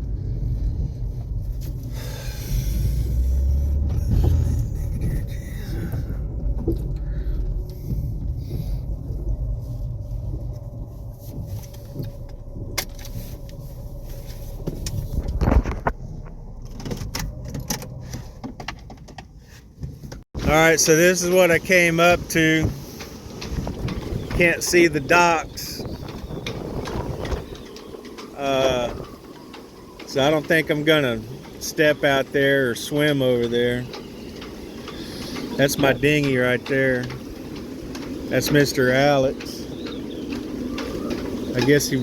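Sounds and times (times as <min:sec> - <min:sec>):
car engine low rumble: 0:00.0 - 0:42.0
sharp clicks and knocks: 0:03.7 - 0:42.0
hiss: 0:34.7 - 0:35.6.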